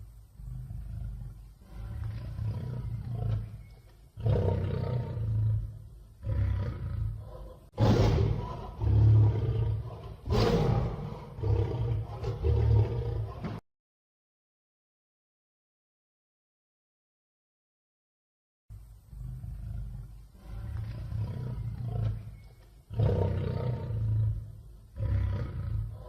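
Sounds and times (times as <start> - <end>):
lion roaring: 0.4 - 13.6, 19.1 - 26.0.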